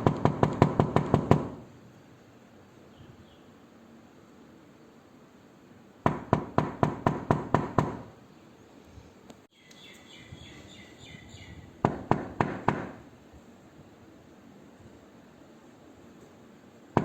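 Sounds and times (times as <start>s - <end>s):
knuckles knocking on wooden door: 0.0s - 1.6s, 6.1s - 8.1s, 11.9s - 13.0s.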